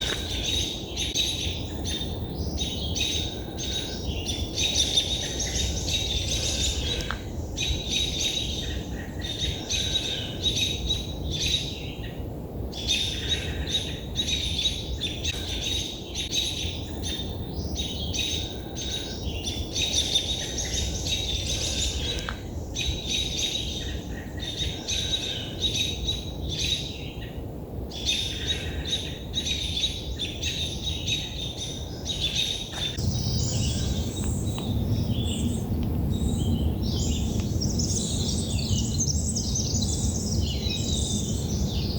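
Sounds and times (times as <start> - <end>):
songbirds chirping: 0.0 - 41.9
steady low rumble: 32.9 - 41.9.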